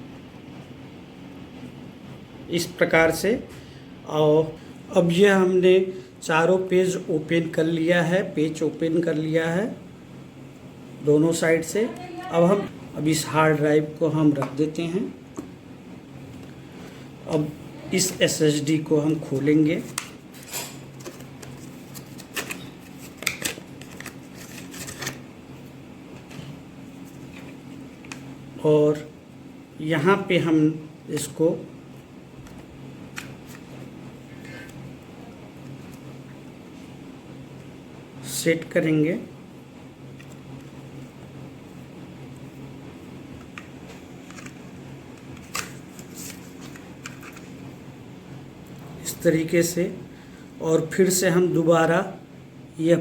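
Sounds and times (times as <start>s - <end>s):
low steady hum: 0.0s - 53.0s
plastic packaging crinkling: 20.9s - 25.2s.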